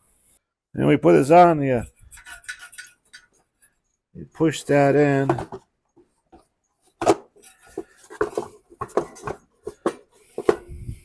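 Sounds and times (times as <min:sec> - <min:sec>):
metal clinks and knocks: 0:02.0 - 0:03.9.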